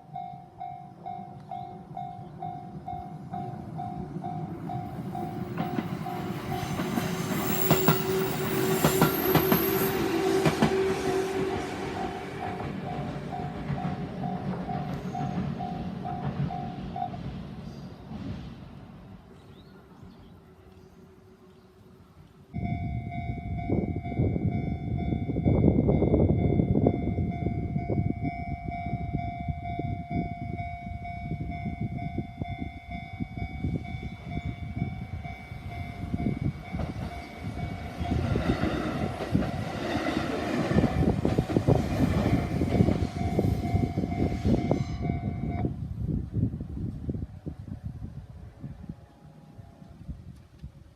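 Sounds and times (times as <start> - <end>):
level crossing warning bell: 0.0 - 9.8, 12.0 - 17.2, 22.6 - 39.2, 42.6 - 45.7
electric train rumbling: 0.0 - 50.8.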